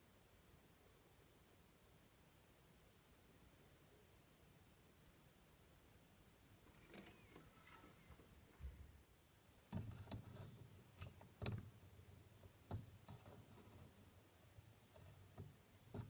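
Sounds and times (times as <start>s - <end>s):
faint clicks and small knocks: 6.6s - 16.0s.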